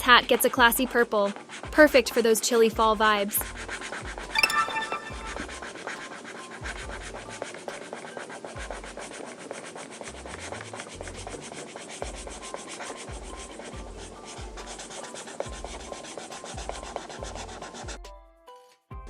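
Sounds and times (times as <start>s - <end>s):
scribbling on paper: 0.1s - 2.2s, 3.4s - 4.2s, 6.2s - 18.0s.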